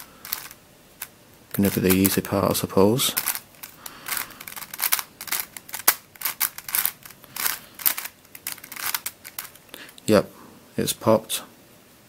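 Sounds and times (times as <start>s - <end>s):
twisty puzzle clicking and clacking: 0.0s - 2.3s, 3.2s - 9.8s.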